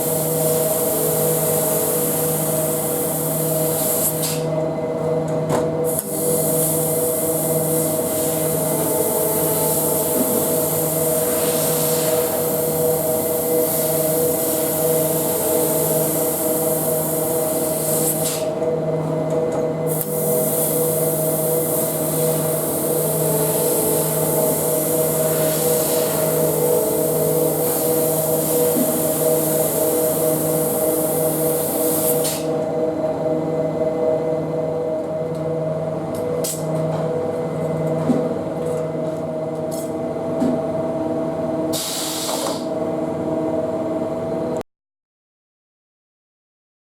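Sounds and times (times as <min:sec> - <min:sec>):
laser cutter humming: 0:05.8 - 0:18.9, 0:19.7 - 0:37.8
brief hisses: 0:41.7 - 0:42.7.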